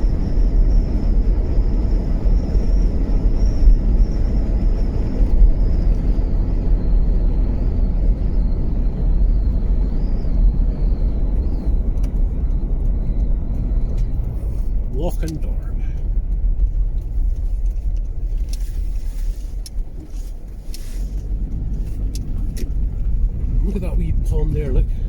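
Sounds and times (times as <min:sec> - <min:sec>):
engine and road rumble: 0:00.0 - 0:25.0.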